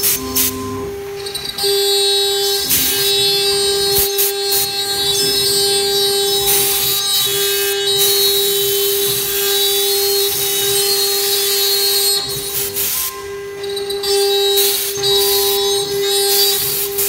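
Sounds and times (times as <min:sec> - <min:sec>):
router spindle high whine: 0:00.0 - 0:17.0.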